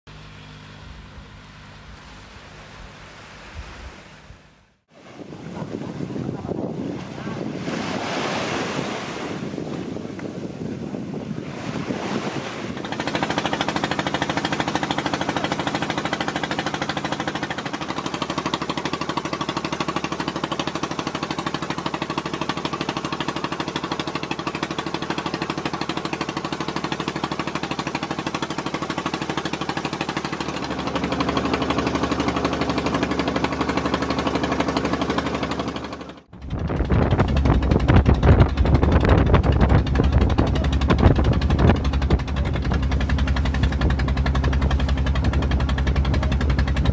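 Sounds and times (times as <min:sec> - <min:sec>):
boat engine knocking: 0:05.1 - 0:46.9.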